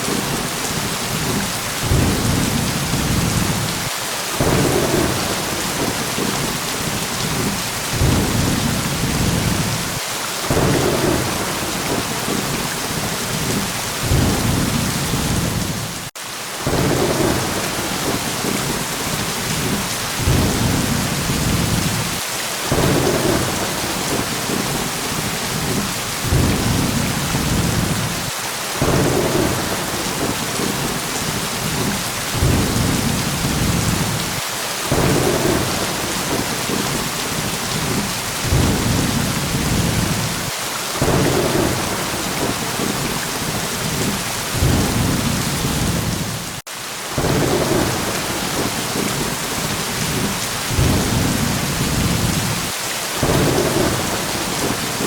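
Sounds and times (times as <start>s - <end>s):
thunder rumbles: 0.0s - 46.6s, 47.2s - 55.0s
heavy rain hissing: 0.0s - 55.0s.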